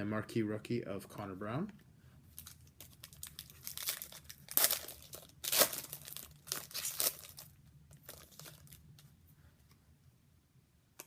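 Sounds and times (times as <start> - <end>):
wrapper tearing and crinkling: 2.4 - 8.8.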